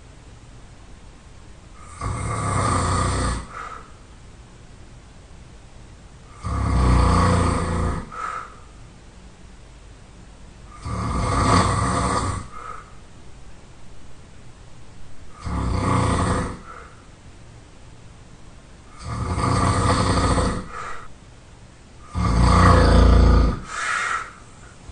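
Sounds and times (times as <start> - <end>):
person snoring loudly: 1.8 - 3.8, 6.3 - 8.4, 10.7 - 12.8, 15.3 - 17.0, 18.9 - 21.1, 22.0 - 24.4
quiet puff of breath: 23.7 - 24.4.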